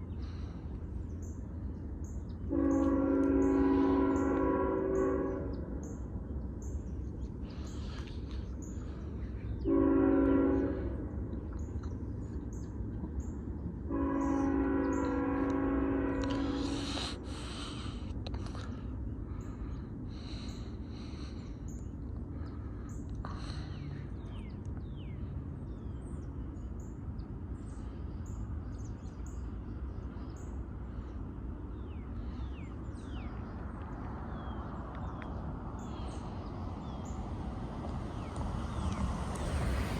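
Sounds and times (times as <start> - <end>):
birds chirping: 0.0 - 39.9
low rumble of train: 0.0 - 39.9
locomotive air horn blasts: 2.4 - 5.9, 9.6 - 11.4, 13.9 - 18.0.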